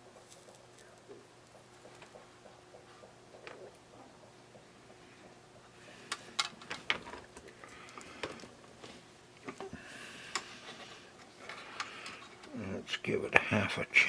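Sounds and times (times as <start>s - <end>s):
wires and small tools clicking: 6.0s - 8.6s.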